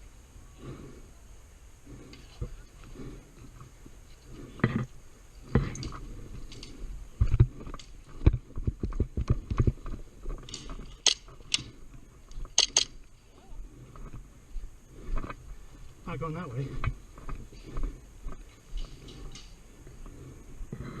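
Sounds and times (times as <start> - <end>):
sharp clicks: 10.4 - 11.7, 12.3 - 13.1.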